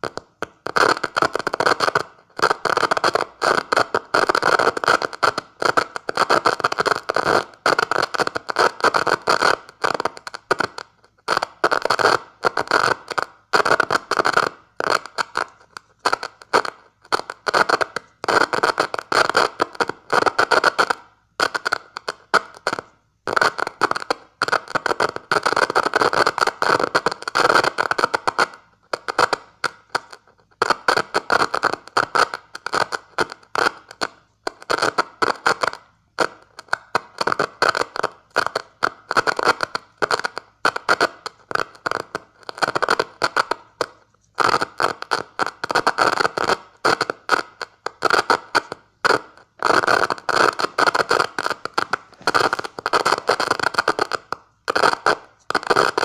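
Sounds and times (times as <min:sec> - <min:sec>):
crackling electrical noise bursts: 0:45.0 - 0:55.8.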